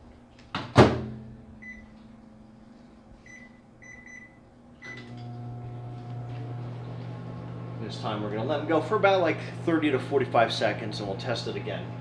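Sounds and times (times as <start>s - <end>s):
microwave humming: 0.6s - 12.0s
keypad beeps: 3.3s - 5.1s.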